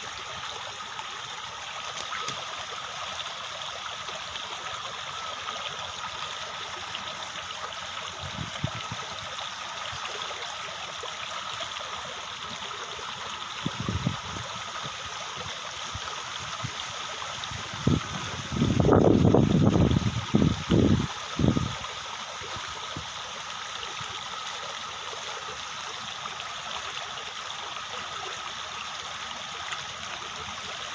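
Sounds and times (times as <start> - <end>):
stream water flowing: 0.0 - 30.9.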